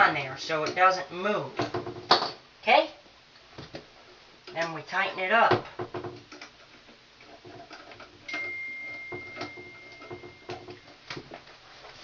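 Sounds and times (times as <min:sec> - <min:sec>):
steady high-pitched tone: 0:08.3 - 0:10.9.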